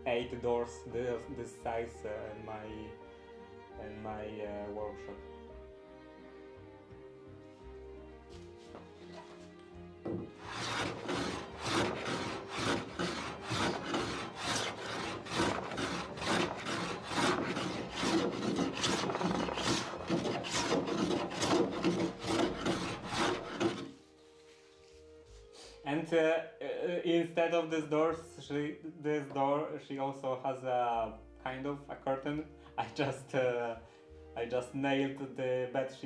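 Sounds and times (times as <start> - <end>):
quiet background music: 0.0 - 36.0
hand sanding wooden door: 10.4 - 24.0.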